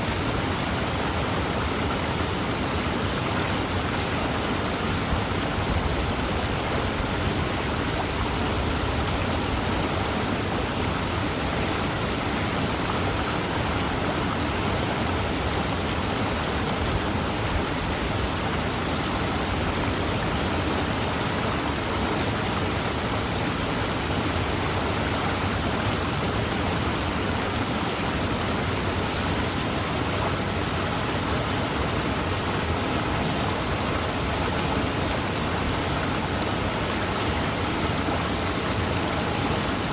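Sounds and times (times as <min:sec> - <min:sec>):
river water rushing: 0:00.0 - 0:39.9.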